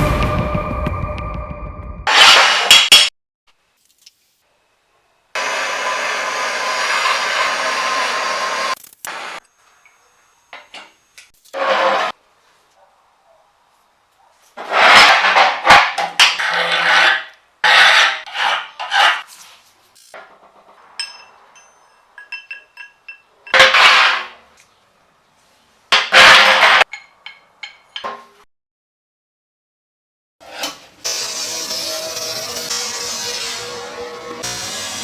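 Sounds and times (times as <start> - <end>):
metal scraping and rubbing: 14.5 - 22.0, 23.5 - 24.5
sharp metallic clinks: 21.0 - 23.6.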